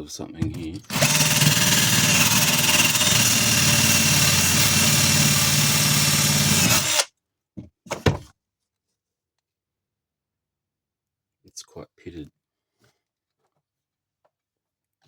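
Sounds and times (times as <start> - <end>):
handheld power tool running: 0.8 - 7.1.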